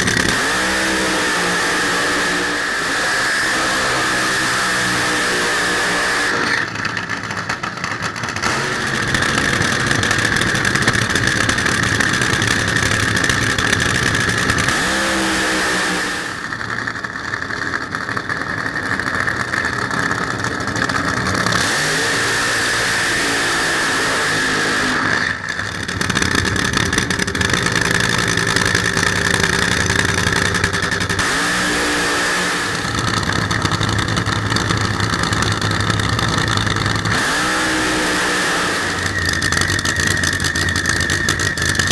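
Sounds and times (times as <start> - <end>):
engine revs sweeping up and down: 0.0 - 6.7, 8.4 - 11.6, 12.7 - 16.6, 21.3 - 26.3, 27.8 - 33.2, 37.0 - 41.9
drag racing engines at full throttle: 0.0 - 41.9.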